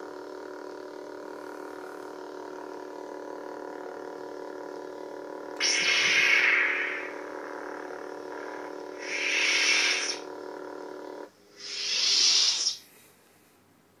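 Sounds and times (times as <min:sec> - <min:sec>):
toy lightsaber buzzing hum: 0:00.6 - 0:12.9
lightsaber whoosh: 0:05.6 - 0:10.2, 0:11.6 - 0:12.8.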